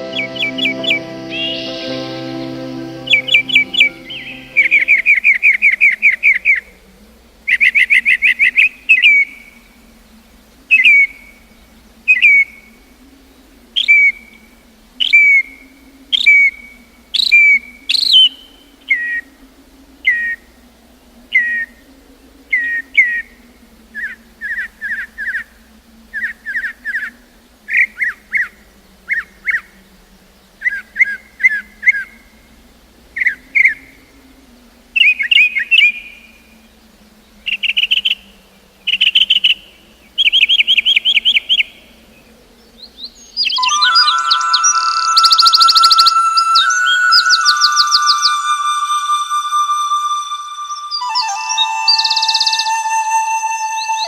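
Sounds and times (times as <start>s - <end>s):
songbird whistling song: 0.0s - 6.6s, 13.8s - 14.4s, 15.0s - 19.2s, 35.0s - 36.4s, 37.4s - 38.3s, 38.9s - 41.8s, 42.9s - 54.0s.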